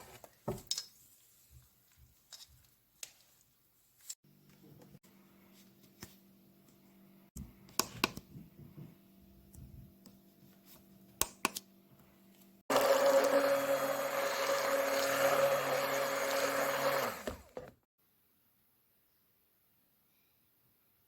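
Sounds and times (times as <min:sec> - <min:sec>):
electric blender running: 0:12.7 - 0:17.8.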